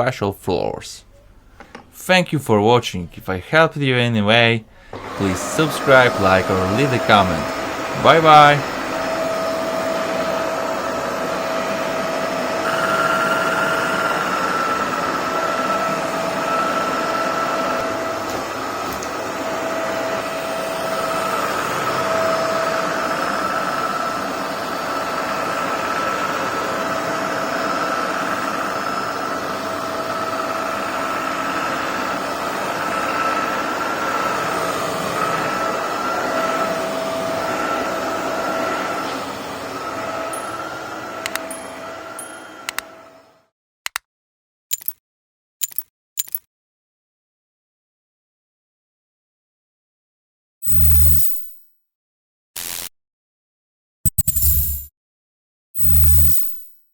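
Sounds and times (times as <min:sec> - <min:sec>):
floor cleaner motor whirring: 0:04.7 - 0:43.4.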